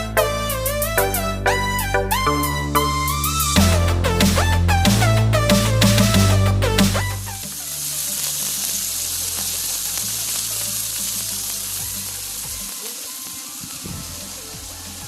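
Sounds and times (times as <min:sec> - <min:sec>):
electronic background music: 0:00.0 - 0:15.0
food sizzling: 0:05.5 - 0:15.0.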